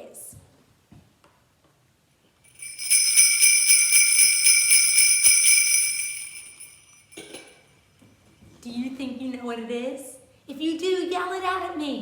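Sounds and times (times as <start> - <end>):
sleigh bells jingling: 2.5 - 7.5.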